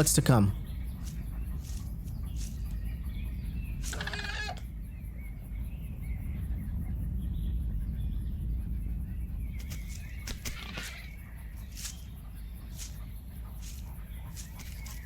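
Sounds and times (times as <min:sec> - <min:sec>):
faint small calls: 0:00.0 - 0:04.7, 0:09.6 - 0:15.0
dinosaur call: 0:03.8 - 0:04.6.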